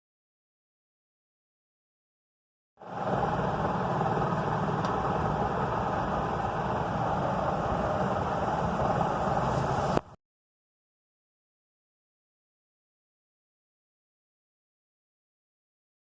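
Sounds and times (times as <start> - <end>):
motorcycle engine running: 2.8 - 9.7.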